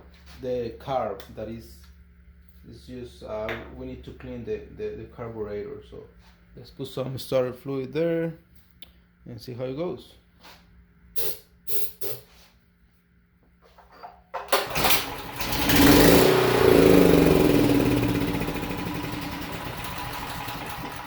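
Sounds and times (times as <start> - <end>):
generator engine running: 14.5 - 21.0
starter fluid spraying: 14.6 - 21.0.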